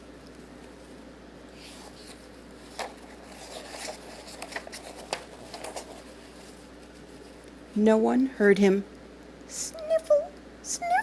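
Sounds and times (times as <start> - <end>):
paper rustling: 1.6 - 7.5.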